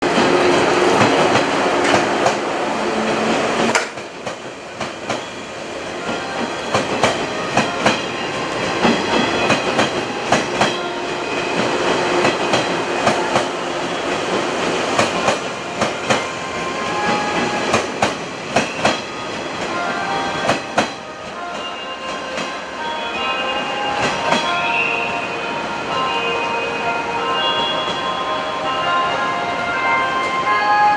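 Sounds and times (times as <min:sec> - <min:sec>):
electric train running on rails: 0:00.0 - 0:30.9
wheels clacking over rail joints: 0:03.6 - 0:05.3.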